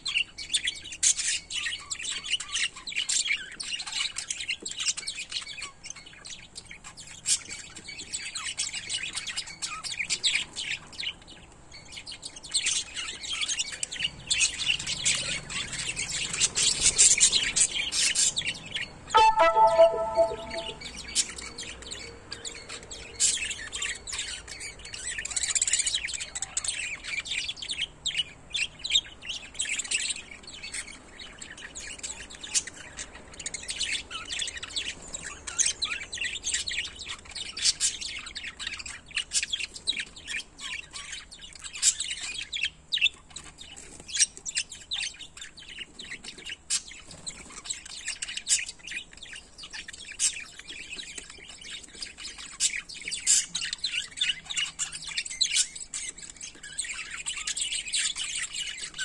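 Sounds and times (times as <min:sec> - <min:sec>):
parrots chirping and chattering: 0:23.4 - 0:59.0.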